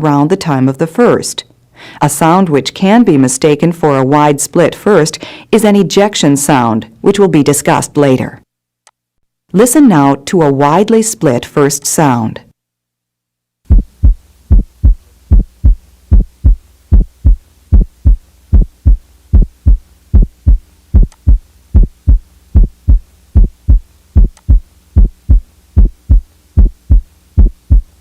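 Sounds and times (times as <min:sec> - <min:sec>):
heartbeat thumps: 0:13.7 - 0:28.0.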